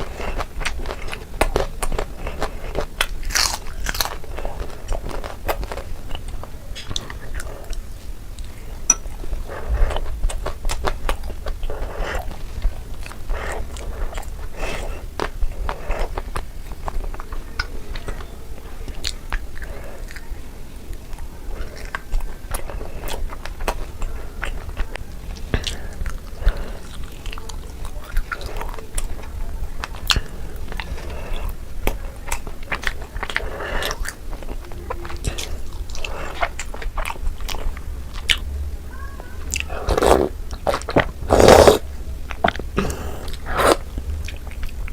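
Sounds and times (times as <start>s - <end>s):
chewing and biting: 0.0s - 18.3s, 20.9s - 38.4s, 39.4s - 44.9s
wet mouth clicks: 39.6s - 44.9s.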